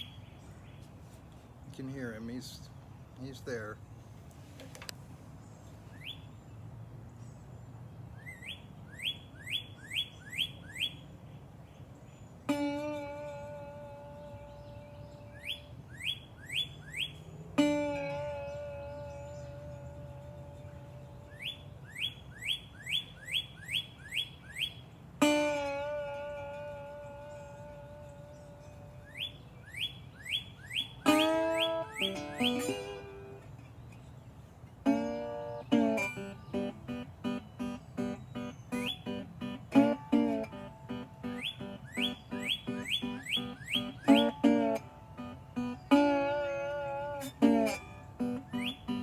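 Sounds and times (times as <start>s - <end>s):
songbird whistling: 5.9s - 6.3s, 8.2s - 11.0s, 14.6s - 17.3s, 21.3s - 24.9s, 28.3s - 33.1s, 35.9s - 46.4s, 47.6s - 49.0s
guitar string plucked: 12.5s - 15.6s, 17.6s - 21.5s, 25.2s - 29.2s, 31.0s - 33.7s, 34.8s - 49.0s.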